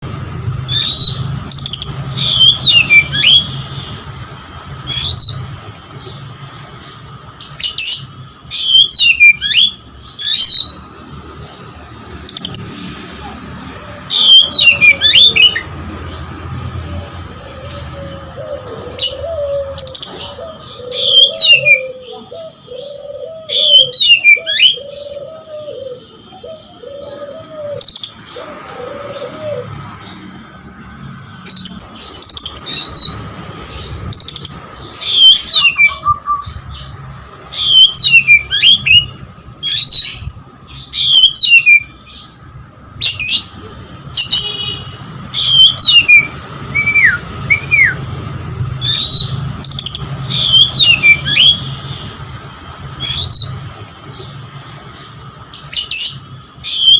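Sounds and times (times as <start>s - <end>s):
bird song whistles and chatter: 0.6s - 3.9s, 4.9s - 6.2s, 6.8s - 11.0s, 14.0s - 15.7s, 17.6s - 28.4s, 31.5s - 42.4s, 44.1s - 48.0s, 48.8s - 51.9s, 53.0s - 54.4s, 55.0s - 56.9s.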